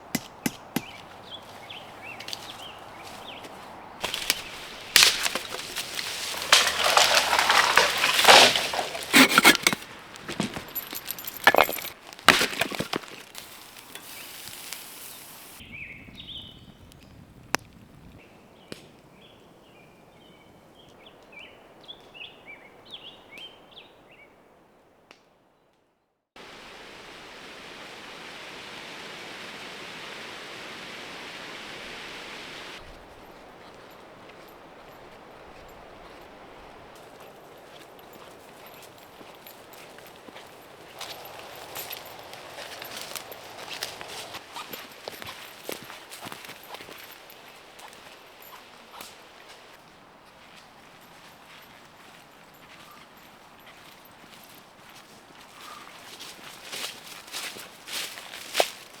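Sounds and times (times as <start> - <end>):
small birds chirping: 0.0 - 9.2, 13.4 - 24.3
steady hiss like rain: 13.2 - 18.6, 26.4 - 39.7.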